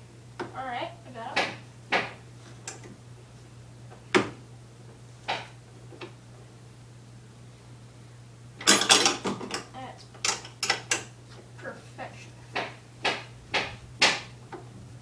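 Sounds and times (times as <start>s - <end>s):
sharp clicks and knocks: 12.6s - 14.7s.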